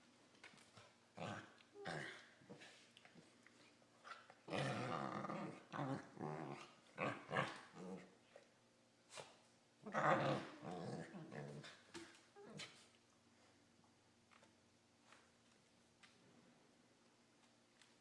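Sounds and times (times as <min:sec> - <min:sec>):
dogs play-growling: 0:00.6 - 0:08.2, 0:09.8 - 0:12.8.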